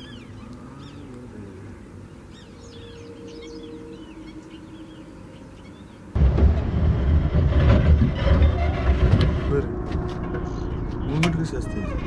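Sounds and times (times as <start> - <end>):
small birds chirping: 0.0 - 6.2
loud low rumble: 3.6 - 12.0.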